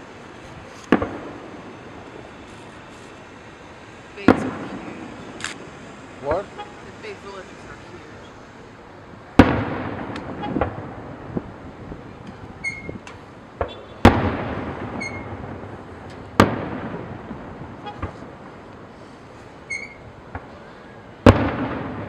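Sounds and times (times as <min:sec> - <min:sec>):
firework pops and crackles: 0:00.3 - 0:03.2, 0:04.2 - 0:05.8, 0:09.4 - 0:18.9, 0:19.7 - 0:22.0
fireworks booming with echoes: 0:00.9 - 0:07.8, 0:09.2 - 0:22.0.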